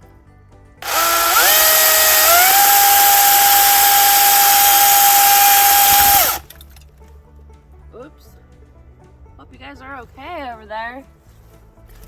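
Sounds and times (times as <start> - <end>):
electric chainsaw motor whine: 0.8 - 6.4.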